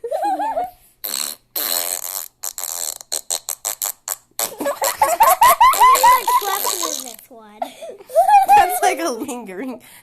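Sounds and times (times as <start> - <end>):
fart sound effect: 1.0 - 4.7, 5.8 - 7.2
high-pitched giggling: 4.5 - 9.0.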